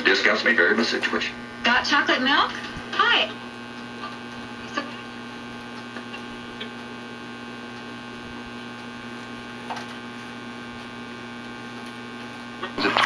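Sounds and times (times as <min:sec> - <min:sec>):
faint radio crackles: 0:00.0 - 0:13.0
radio hiss: 0:00.0 - 0:13.0
radio mains hum: 0:00.0 - 0:13.0.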